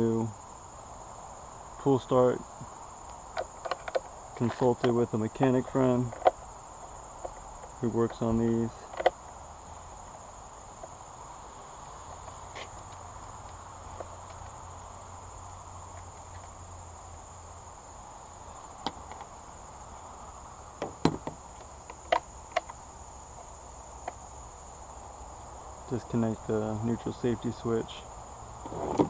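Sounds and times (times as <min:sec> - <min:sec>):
crickets trilling: 0:00.0 - 0:29.0
sharp clicks and knocks: 0:03.0 - 0:05.0, 0:06.1 - 0:06.4, 0:08.9 - 0:09.2, 0:20.8 - 0:22.8.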